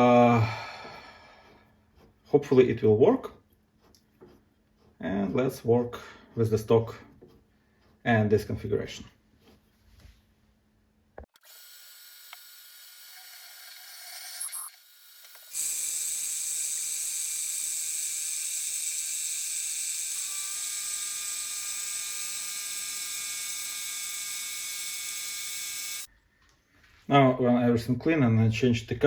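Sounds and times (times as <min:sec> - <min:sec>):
small electric motor whining: 0:11.3 - 0:26.1.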